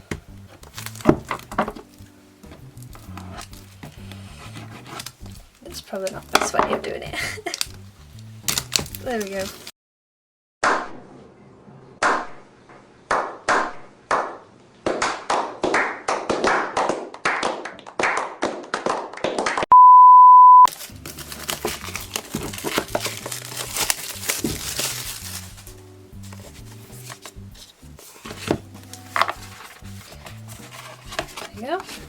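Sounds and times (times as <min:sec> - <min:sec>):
background music: 0:00.0 - 0:09.7, 0:20.7 - 0:32.0
plastic wrapping being torn: 0:00.6 - 0:02.1, 0:07.2 - 0:09.7, 0:20.7 - 0:27.4
loud steady beep: 0:19.7 - 0:20.7.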